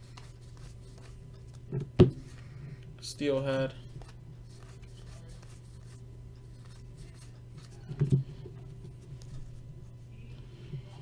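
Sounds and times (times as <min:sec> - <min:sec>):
trading cards flipped by hand: 0:00.0 - 0:01.7, 0:04.0 - 0:07.8
steady low hum: 0:00.0 - 0:11.0.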